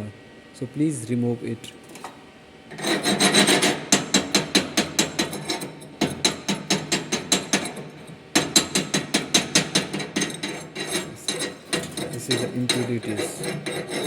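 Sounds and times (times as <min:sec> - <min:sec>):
chipping hammer striking metal: 0:03.3 - 0:10.6.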